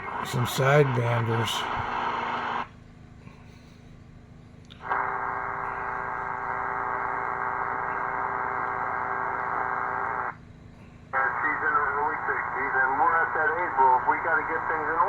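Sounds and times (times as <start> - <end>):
radio hiss and hum: 0.0 - 2.7, 4.8 - 10.4, 11.1 - 15.0
steady multi-tone radio signal: 0.0 - 2.7, 4.8 - 10.4, 11.2 - 15.0.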